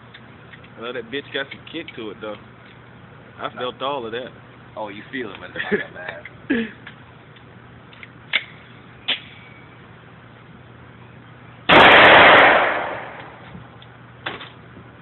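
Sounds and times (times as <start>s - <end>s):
faint gunshot cracks: 11.7s - 13.4s
pistol firing burst: 11.7s - 13.4s.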